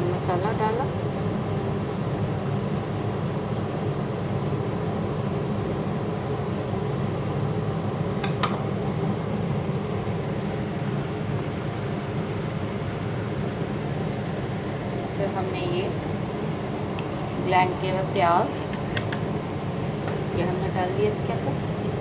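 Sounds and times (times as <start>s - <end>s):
low background hum: 0.0s - 22.0s.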